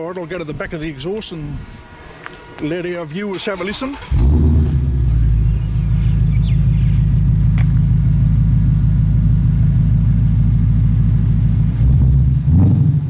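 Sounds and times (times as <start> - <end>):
car engine idling deeply: 2.7 - 13.0.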